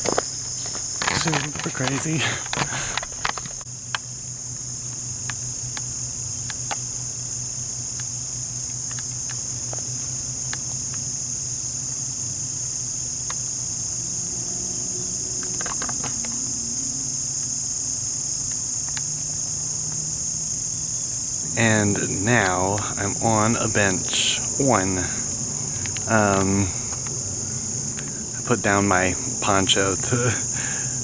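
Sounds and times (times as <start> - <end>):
faint clicks: 0.0 - 4.1, 4.9 - 11.2, 15.1 - 31.0
faint low hum: 0.0 - 31.0
insects chirping: 0.0 - 31.0.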